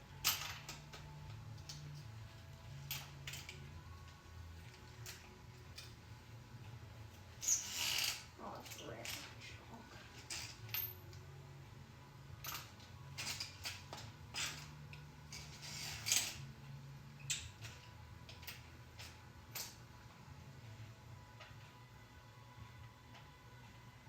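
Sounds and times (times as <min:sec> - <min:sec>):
low steady hum: 0:00.0 - 0:07.5, 0:08.1 - 0:24.0
wrench clicking and scraping metal: 0:07.4 - 0:09.3, 0:10.1 - 0:11.1, 0:12.5 - 0:16.5.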